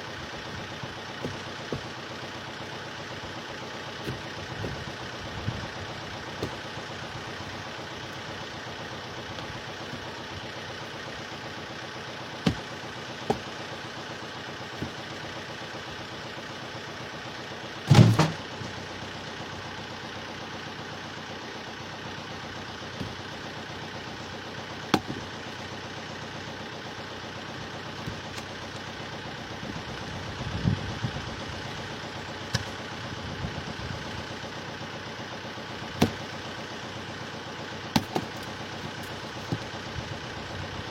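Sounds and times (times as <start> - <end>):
motor running: 0.0 - 16.2, 22.1 - 40.9
loud thump: 17.9 - 18.4.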